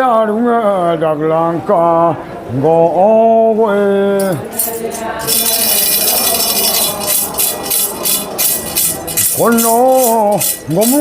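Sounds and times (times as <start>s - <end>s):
person singing refrain: 3.9s - 11.0s
metal rattle shaken: 4.2s - 11.0s.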